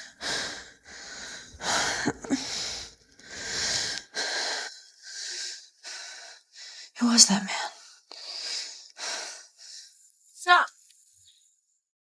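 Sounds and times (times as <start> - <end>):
woman breathing heavily: 0.0 - 7.0, 7.6 - 10.0.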